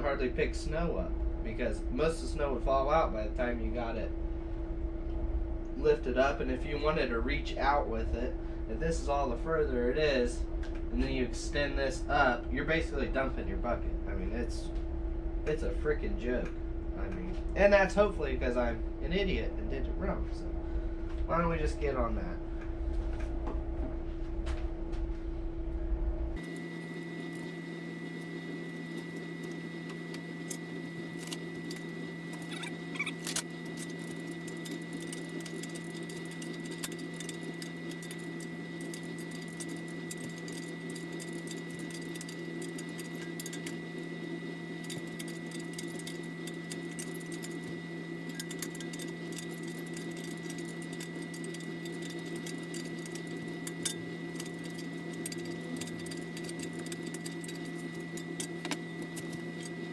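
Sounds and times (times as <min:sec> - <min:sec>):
mini excavator running: 0:26.4 - 0:59.9
light rattling clicks: 0:44.8 - 0:59.9.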